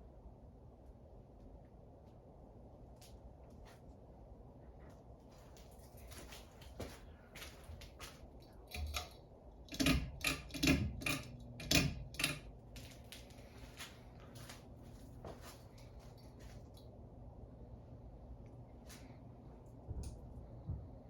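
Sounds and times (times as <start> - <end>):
ceiling fan motor hum: 0.0 - 21.0
irregular clicks and ticks: 8.7 - 12.9.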